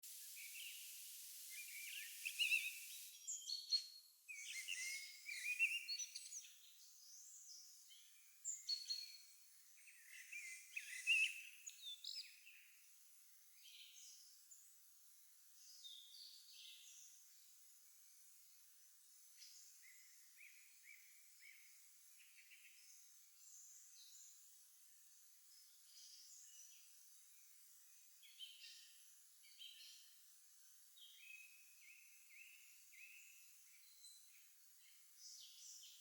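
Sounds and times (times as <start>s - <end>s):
faint hiss: 0.0s - 3.6s
songbirds chirping and trilling: 0.3s - 12.8s.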